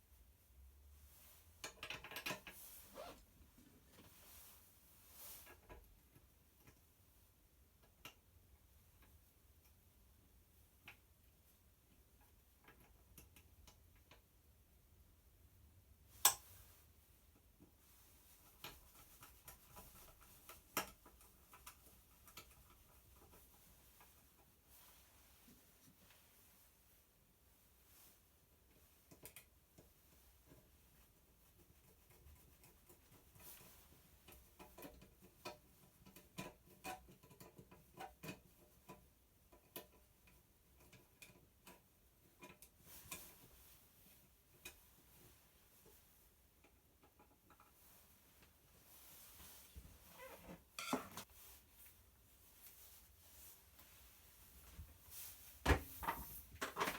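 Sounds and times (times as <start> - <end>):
small clicks and taps of parts: 1.6 - 2.6, 7.8 - 9.8, 12.0 - 14.4, 16.2 - 16.6, 18.6 - 23.4, 29.0 - 30.7, 33.6 - 43.4.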